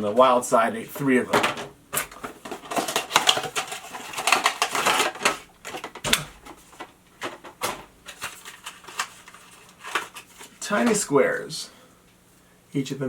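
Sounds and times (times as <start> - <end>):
wrapper crinkling: 1.9 - 11.0.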